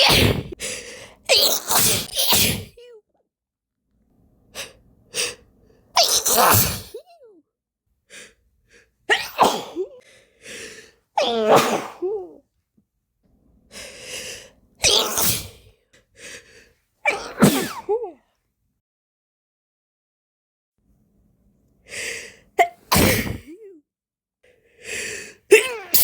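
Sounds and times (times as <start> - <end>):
woman sneezing: 0.0 - 0.6, 1.3 - 3.0, 6.0 - 7.4, 9.1 - 10.0, 11.2 - 12.4, 14.8 - 15.6, 17.1 - 18.2, 22.6 - 23.8, 25.5 - 26.0
catching inhales: 10.0 - 11.0, 24.6 - 25.4.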